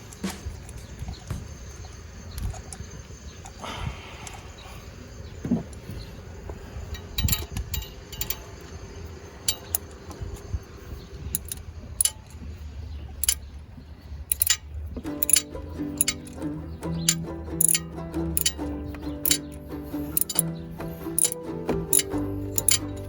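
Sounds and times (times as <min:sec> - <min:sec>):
metallic hand tool clicks: 0:07.0 - 0:08.5, 0:09.5 - 0:09.8, 0:11.4 - 0:12.3, 0:13.2 - 0:13.4, 0:14.3 - 0:14.6, 0:15.2 - 0:16.4, 0:17.0 - 0:20.5, 0:21.2 - 0:23.0.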